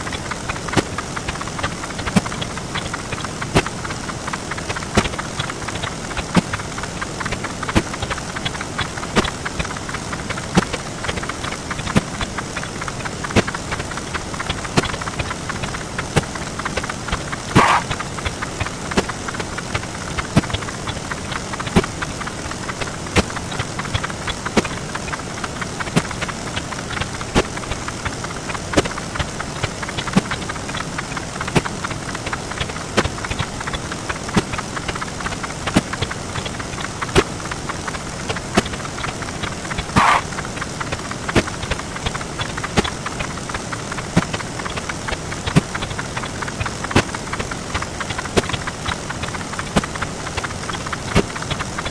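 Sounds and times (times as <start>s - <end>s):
bright swish: 17.6s - 18.0s, 40.0s - 40.3s.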